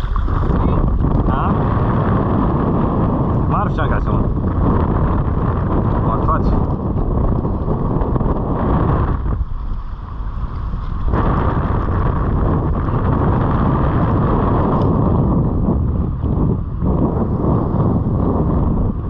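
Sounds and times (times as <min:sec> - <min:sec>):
wind buffeting microphone: 0:00.0 - 0:19.0.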